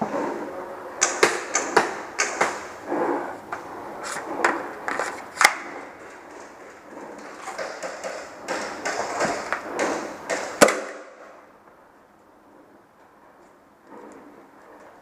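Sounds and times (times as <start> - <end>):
airsoft rifle shots: 7.6 - 11.3.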